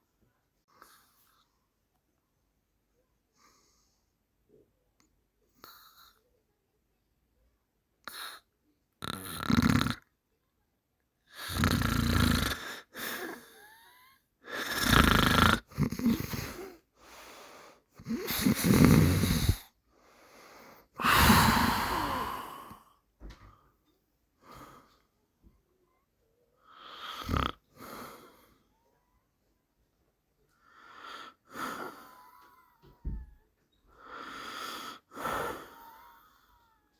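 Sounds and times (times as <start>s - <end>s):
person snoring heavily: 9.0s - 10.0s, 11.4s - 13.3s, 14.5s - 16.7s, 18.0s - 19.6s, 21.0s - 22.8s, 26.9s - 28.2s.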